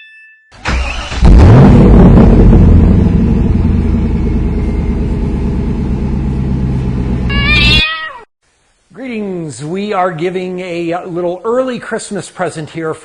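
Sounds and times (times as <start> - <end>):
car engine running: 1.2 - 7.3
high wavering cry: 7.3 - 8.3.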